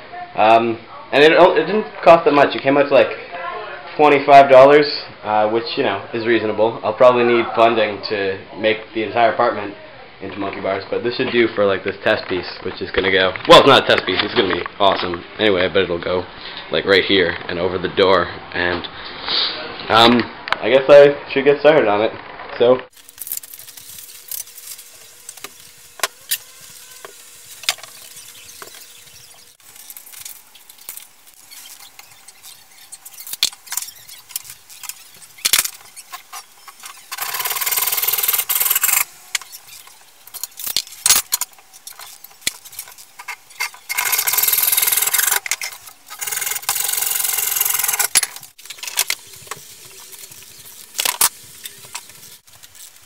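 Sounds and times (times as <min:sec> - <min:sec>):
cutting or drilling noise: 0:22.9 - 0:53.0.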